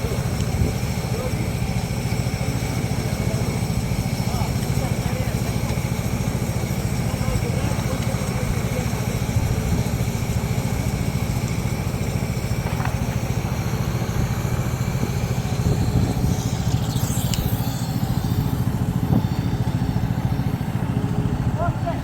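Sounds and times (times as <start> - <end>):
small engine running: 0.0 - 22.0.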